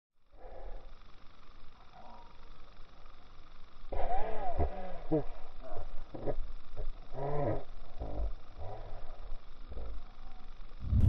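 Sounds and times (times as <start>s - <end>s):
low rumble: 10.8s - 11.0s.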